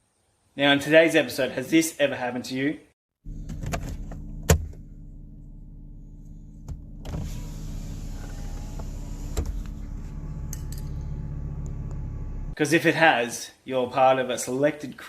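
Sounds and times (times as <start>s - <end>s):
car engine idling: 3.3s - 12.6s.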